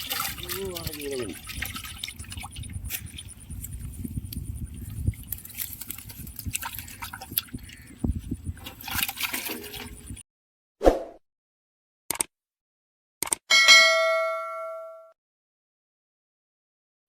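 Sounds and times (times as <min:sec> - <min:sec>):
water splashing and sloshing: 0:00.0 - 0:10.2.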